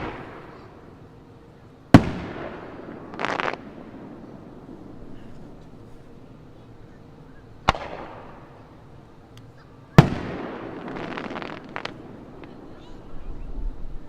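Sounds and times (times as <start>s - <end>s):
faint crackles: 0.0s - 13.5s
lingering rumble: 0.0s - 14.0s
firework shells bursting: 1.9s - 6.2s, 7.6s - 12.6s.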